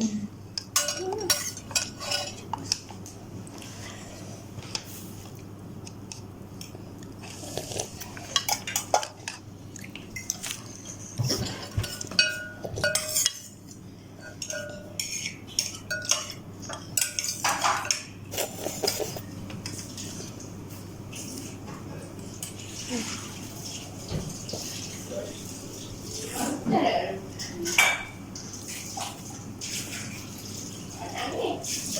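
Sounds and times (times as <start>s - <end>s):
cutlery clinking against a bowl: 0.6s - 3.1s, 7.8s - 20.3s, 27.4s - 29.2s.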